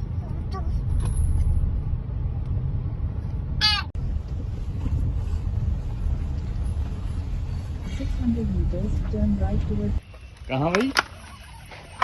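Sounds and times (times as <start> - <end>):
road vehicle rumble: 0.0 - 12.0
wind on microphone: 4.0 - 7.7.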